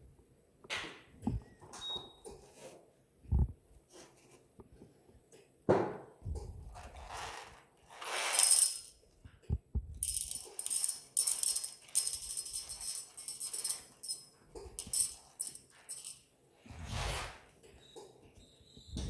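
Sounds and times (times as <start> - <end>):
coffee beans rattling in grinder: 7.0 - 9.0, 10.0 - 16.2.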